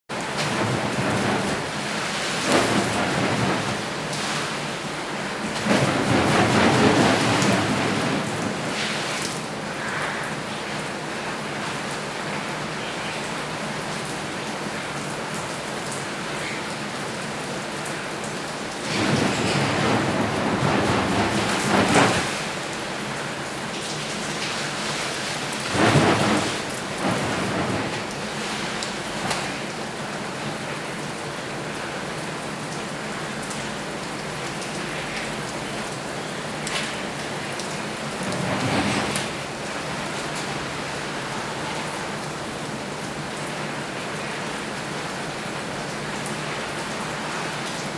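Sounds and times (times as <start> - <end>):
shower water pouring: 0.1 - 9.7, 16.9 - 30.5
shower spray falling: 23.7 - 29.7.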